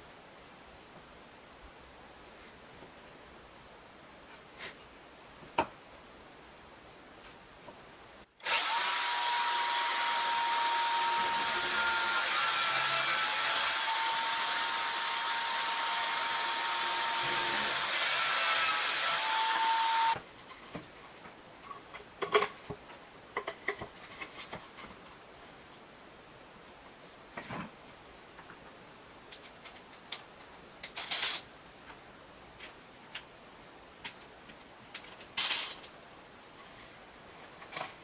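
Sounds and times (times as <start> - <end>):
electric drill whining: 8.4 - 20.2.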